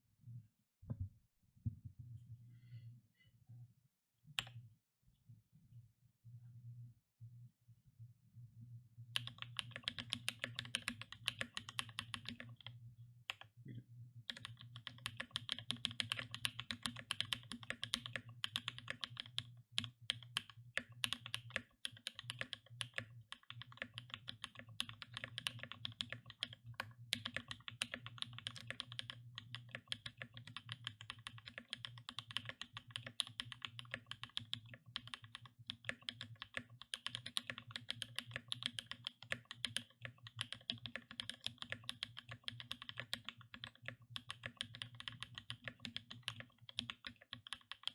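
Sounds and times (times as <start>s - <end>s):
fast mechanical keyboard typing: 9.2s - 12.7s, 14.3s - 47.9s.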